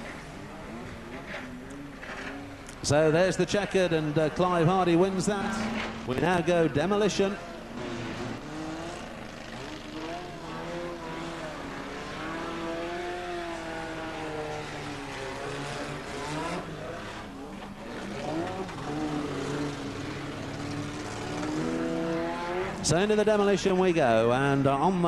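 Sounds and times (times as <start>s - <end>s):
car engines revving: 0.0s - 25.0s.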